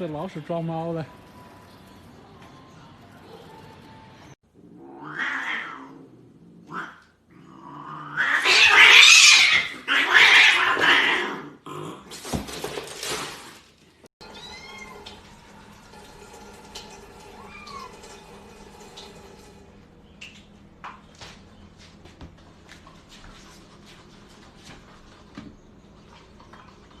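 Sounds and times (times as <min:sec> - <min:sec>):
cat meowing: 0:04.8 - 0:06.0, 0:14.2 - 0:15.0, 0:17.4 - 0:17.9
cat yowling: 0:04.8 - 0:06.0, 0:07.9 - 0:11.5, 0:14.2 - 0:15.0, 0:17.4 - 0:18.0.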